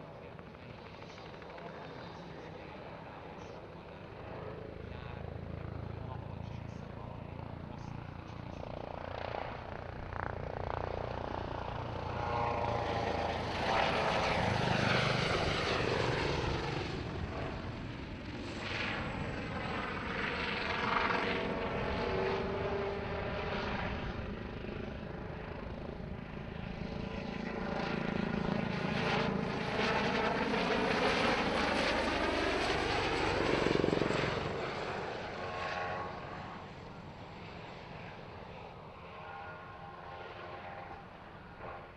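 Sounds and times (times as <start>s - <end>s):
helicopter rotor and turbine noise: 0.0s - 41.9s.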